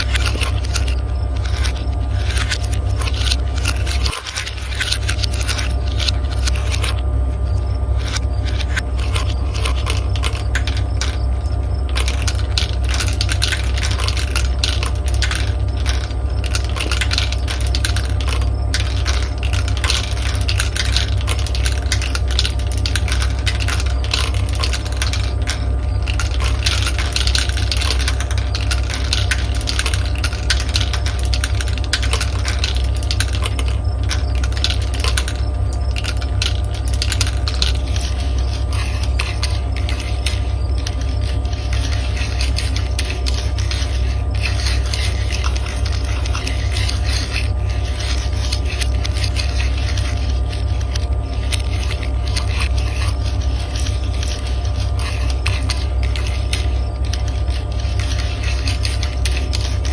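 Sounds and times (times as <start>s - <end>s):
marbles clattering down track: 0.0s - 59.9s
steady low hum: 0.0s - 59.9s
steady low rumble: 0.0s - 59.9s.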